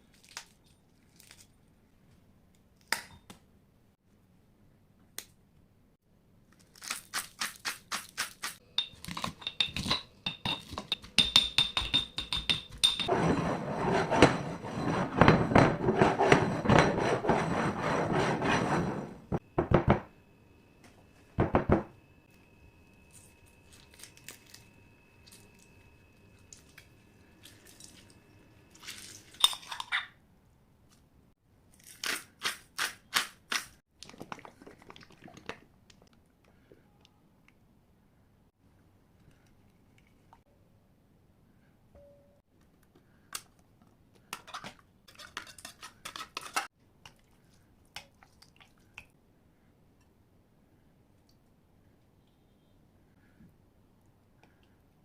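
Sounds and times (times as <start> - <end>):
scraping and mixing: 8.8 - 19.4, 44.3 - 49.1
faint steady tone: 41.4 - 42.5.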